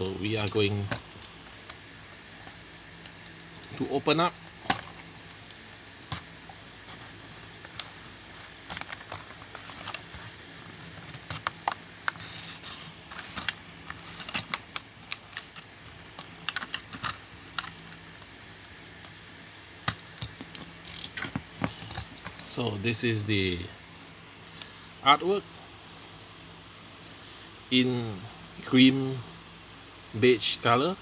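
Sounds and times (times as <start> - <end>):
plastic packaging crackling: 4.6 - 17.9.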